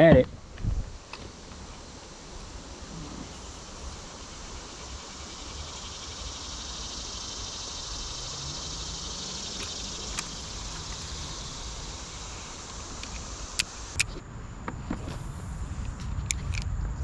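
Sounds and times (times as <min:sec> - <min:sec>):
insects chirping: 0:00.0 - 0:17.0
low wind rumble: 0:00.0 - 0:17.0.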